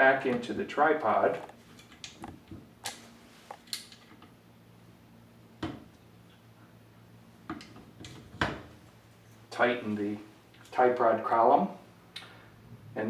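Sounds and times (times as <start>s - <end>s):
faint steady hum: 0.0s - 13.0s
metal tripod parts clicking: 1.7s - 4.2s.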